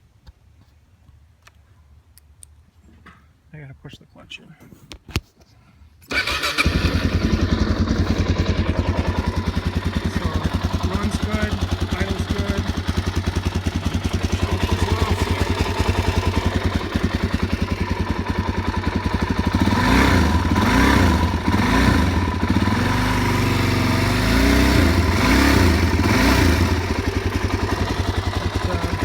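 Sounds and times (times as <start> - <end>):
motorcycle engine idling and revving: 6.1 - 29.0.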